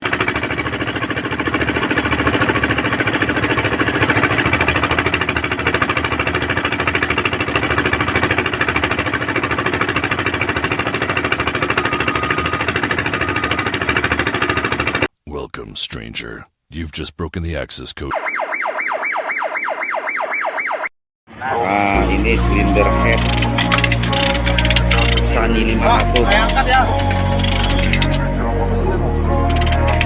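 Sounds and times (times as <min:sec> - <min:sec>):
heavy machine knocking: 0:00.0 - 0:15.1.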